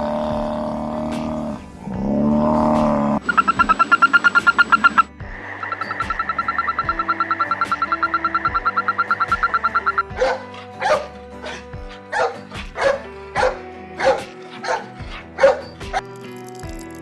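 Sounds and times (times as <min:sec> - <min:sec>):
background music: 0:00.0 - 0:17.0
dog barking: 0:08.7 - 0:15.6.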